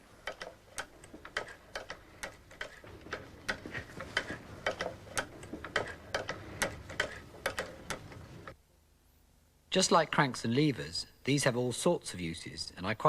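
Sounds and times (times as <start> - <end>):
sewing machine mechanical clicks: 0.0 - 8.6.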